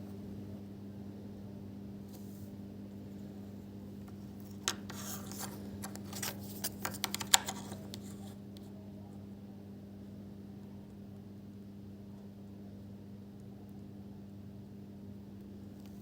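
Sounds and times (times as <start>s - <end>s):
small clicks and scrapes: 4.0s - 8.7s.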